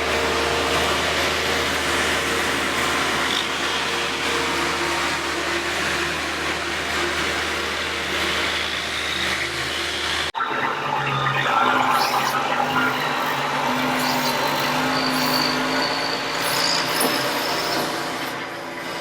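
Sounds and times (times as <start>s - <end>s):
heavy machinery engine running: 0.0s - 10.4s.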